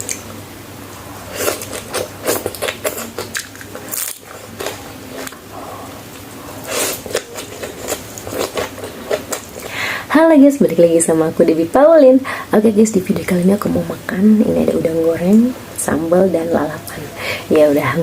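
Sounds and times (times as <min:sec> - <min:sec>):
chewing crunchy food: 0:01.3 - 0:09.8.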